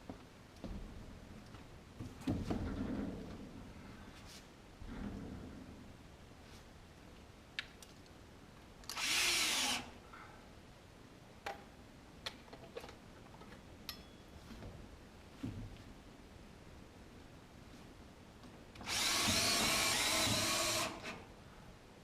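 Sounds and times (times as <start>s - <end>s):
power drill running: 8.9s - 9.9s, 18.8s - 21.2s.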